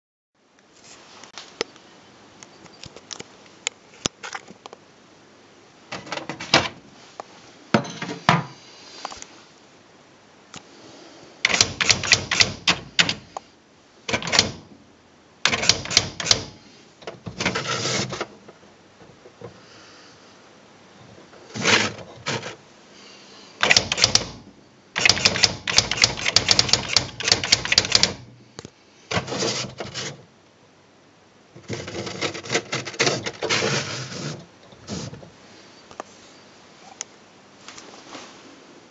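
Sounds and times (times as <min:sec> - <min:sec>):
electronic typewriter printing: 0:11.5 - 0:13.2, 0:14.1 - 0:14.7, 0:15.5 - 0:16.6, 0:23.6 - 0:24.4, 0:25.0 - 0:28.3.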